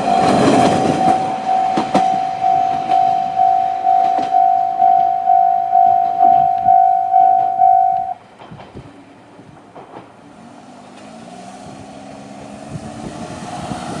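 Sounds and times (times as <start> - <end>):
level-crossing warning bell: 0.0 - 8.2.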